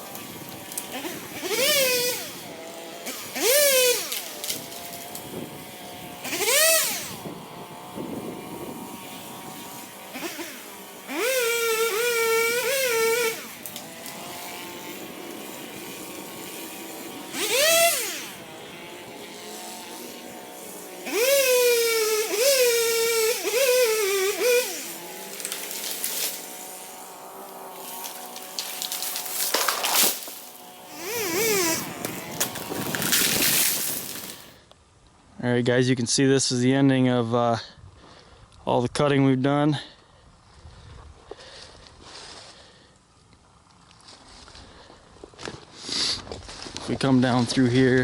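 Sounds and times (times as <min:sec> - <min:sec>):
chainsaw cutting wood: 0:00.0 - 0:34.6
chainsaw idling: 0:00.0 - 0:34.6
chainsaw revving: 0:00.0 - 0:34.6.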